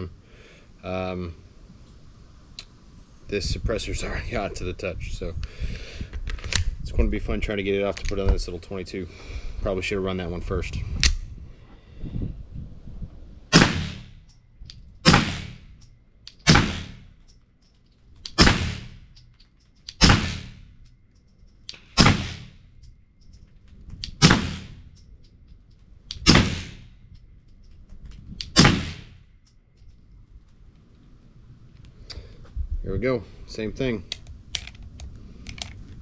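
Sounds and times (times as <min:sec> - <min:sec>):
suppressed pistol shots: 0:13.5 - 0:14.3, 0:15.0 - 0:15.7, 0:16.4 - 0:17.1, 0:18.2 - 0:19.0, 0:19.9 - 0:20.6, 0:21.7 - 0:22.6, 0:24.0 - 0:24.9, 0:26.1 - 0:26.9, 0:28.4 - 0:29.2.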